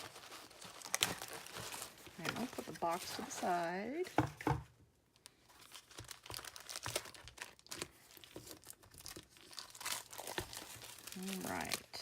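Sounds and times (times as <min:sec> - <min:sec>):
paper and packaging rustling: 0:00.0 - 0:12.0
cardboard box knock: 0:04.1 - 0:04.7.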